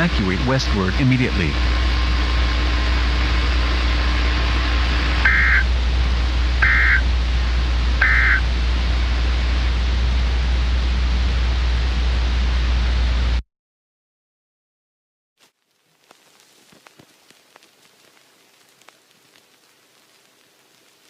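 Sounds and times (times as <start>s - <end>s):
low hum: 0.0s - 13.4s
two-tone data bursts: 5.2s - 5.7s, 6.6s - 7.0s, 8.0s - 8.4s
steady hiss: 15.4s - 21.0s.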